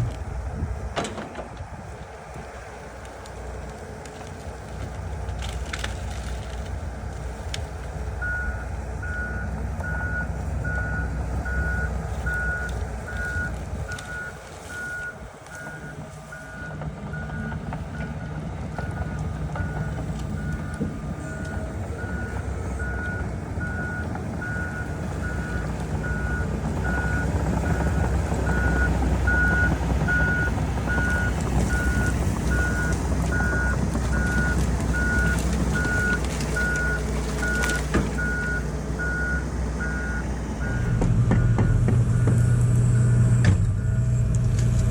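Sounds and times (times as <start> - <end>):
heavy machine engine rumble: 0.0 - 44.9
reversing alarm beeping: 8.2 - 44.3.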